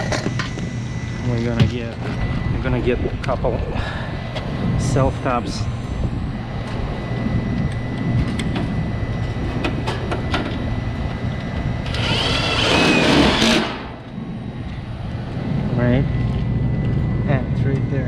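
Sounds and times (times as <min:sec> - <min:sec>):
low machinery hum: 0:00.0 - 0:18.0
cordless drill whirring: 0:11.8 - 0:13.8.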